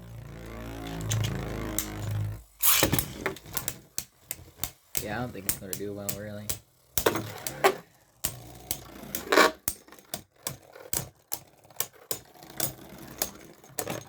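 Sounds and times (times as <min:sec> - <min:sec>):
spinning tops clashing in a stadium: 0:01.0 - 0:11.2.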